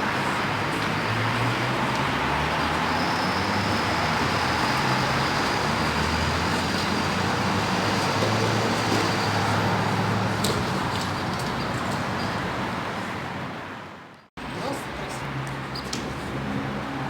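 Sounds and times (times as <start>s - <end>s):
road noise hiss: 0.0s - 17.0s.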